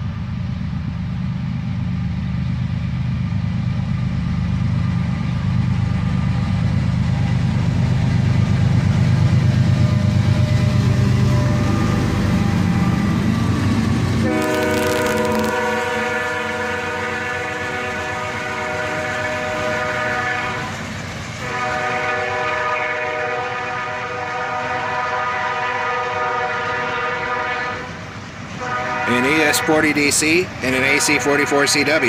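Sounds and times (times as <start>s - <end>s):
locomotive air horn blasts: 14.2s - 20.7s, 21.4s - 28.0s, 28.6s - 30.0s, 30.8s - 32.0s.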